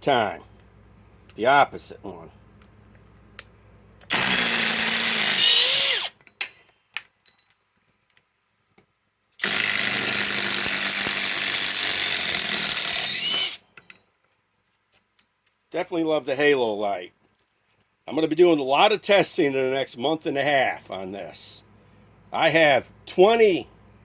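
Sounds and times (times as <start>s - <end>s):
impact wrench hammering: 9.4s - 13.6s.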